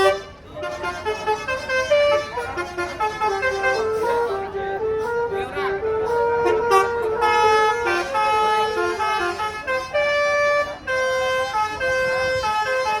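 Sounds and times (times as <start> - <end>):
bus horn playing a tune: 0.0 - 13.0.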